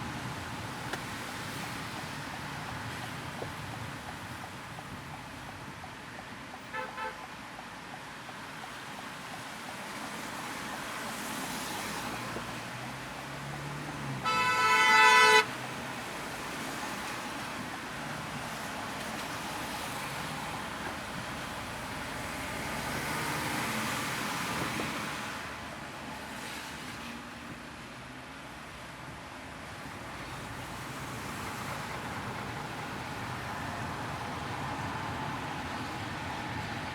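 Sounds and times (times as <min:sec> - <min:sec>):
road and traffic noise: 0:00.0 - 0:36.9
car horn: 0:06.7 - 0:07.2, 0:14.2 - 0:15.8.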